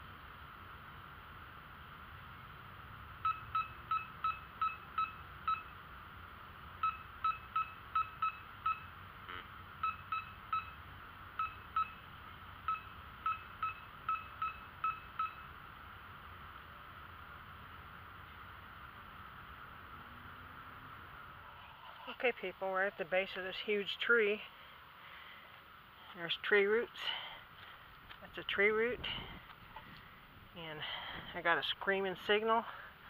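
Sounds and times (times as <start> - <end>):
metal detector beeping: 3.2 - 5.8, 6.8 - 15.6.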